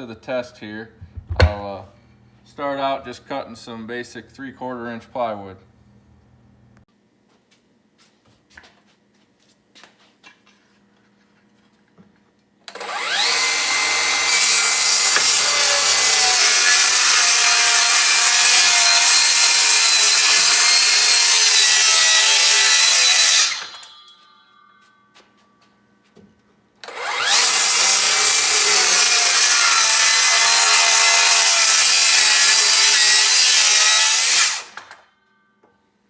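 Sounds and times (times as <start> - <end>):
circular saw cutting plywood: 12.7 - 23.8, 26.9 - 34.8.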